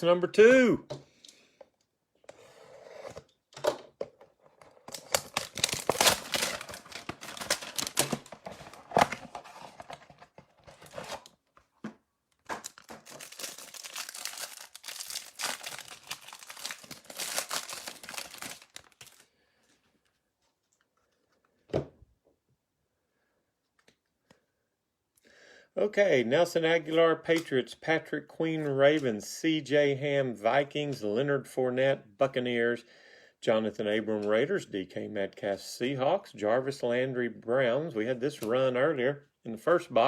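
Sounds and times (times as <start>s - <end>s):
cardboard and wrapping tearing: 4.9s - 11.3s, 12.6s - 19.2s.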